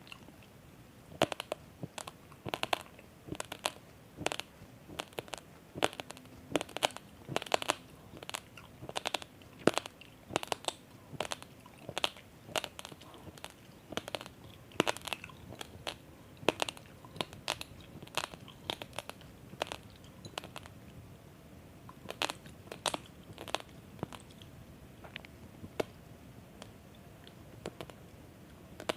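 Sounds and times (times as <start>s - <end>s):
person chewing crunchy rice: 1.1s - 20.7s, 21.9s - 24.5s.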